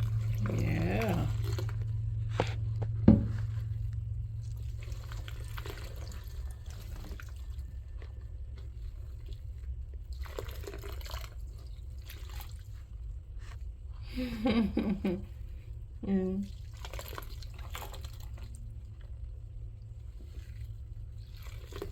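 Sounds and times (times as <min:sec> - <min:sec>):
bath water dripping and lapping: 0:00.0 - 0:13.9, 0:14.5 - 0:21.9
steady low hum: 0:00.0 - 0:21.9
sharp thump: 0:03.0 - 0:03.4.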